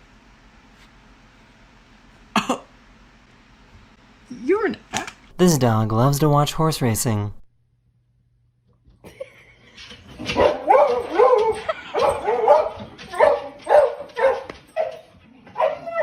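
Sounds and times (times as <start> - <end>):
dog barking and yipping: 10.2 - 16.0.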